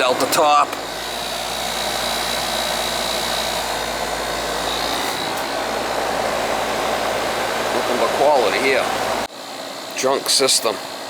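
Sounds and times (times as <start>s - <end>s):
air conditioner fan whooshing: 0.0s - 11.0s.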